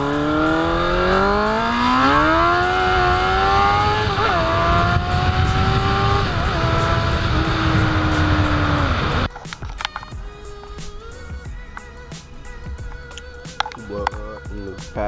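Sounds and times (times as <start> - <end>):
motorcycle engine accelerating: 0.0 - 9.3.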